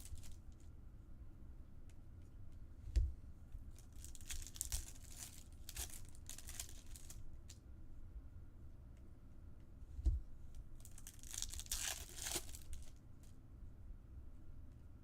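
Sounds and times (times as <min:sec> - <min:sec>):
foil wrappers tearing and crinkling: 0:00.0 - 0:00.4, 0:03.9 - 0:07.2, 0:10.8 - 0:12.9.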